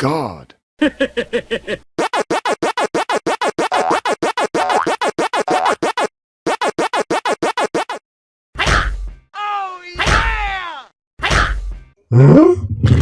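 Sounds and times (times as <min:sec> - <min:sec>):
stuttering electronic music: 0:02.0 - 0:08.0.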